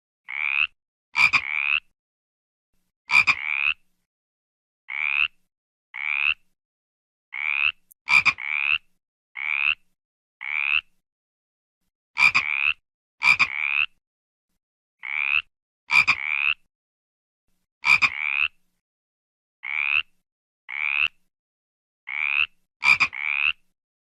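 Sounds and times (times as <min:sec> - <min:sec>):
frog croaking: 0:00.3 - 0:01.9, 0:03.1 - 0:03.8, 0:04.9 - 0:05.4, 0:06.0 - 0:06.5, 0:07.3 - 0:10.9, 0:12.2 - 0:14.0, 0:15.0 - 0:16.7, 0:17.8 - 0:18.6, 0:19.6 - 0:21.2, 0:22.1 - 0:23.6.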